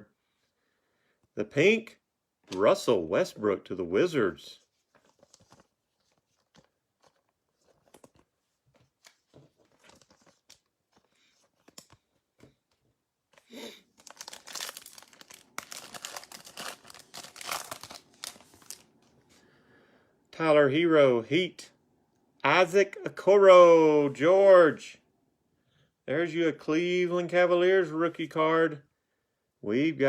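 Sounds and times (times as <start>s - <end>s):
card pack wrapper tearing: 9.0s - 10.7s, 13.4s - 18.9s.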